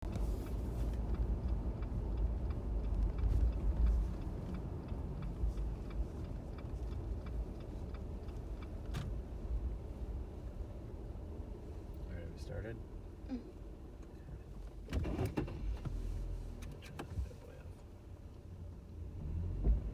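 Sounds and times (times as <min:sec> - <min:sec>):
car engine rumble: 0:00.0 - 0:19.9
faint regular ticks: 0:00.4 - 0:08.8.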